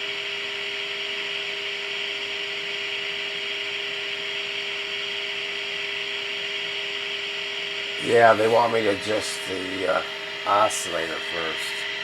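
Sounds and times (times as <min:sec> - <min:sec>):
radio static hiss: 0:08.0 - 0:11.8.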